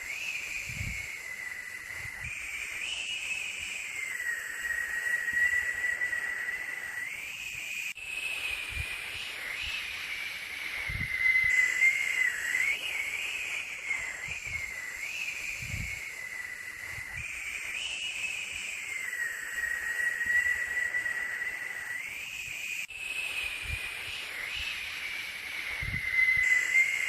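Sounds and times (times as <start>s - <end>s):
white noise hiss with whistling: 0.0s - 27.0s.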